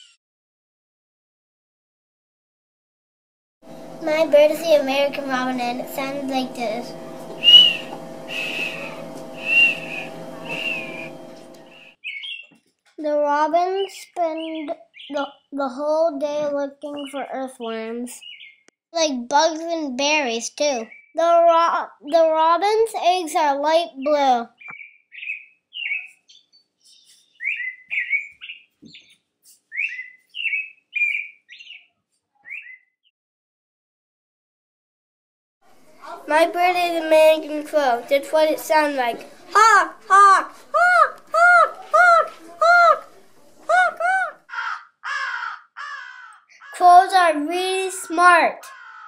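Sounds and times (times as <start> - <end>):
steady low hum: 3.6 - 12.0, 35.7 - 44.4
faint high thin bird notes: 7.0 - 11.9
short bird chirps: 7.4 - 11.1, 11.7 - 12.5, 24.6 - 33.0
robin whistled song: 7.4 - 12.5, 24.6 - 33.0.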